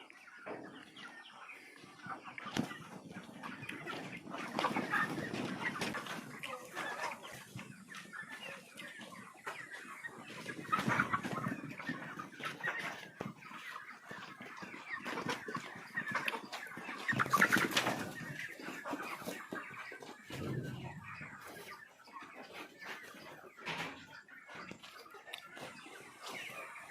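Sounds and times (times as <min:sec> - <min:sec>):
chickens clucking: 0:00.0 - 0:26.9.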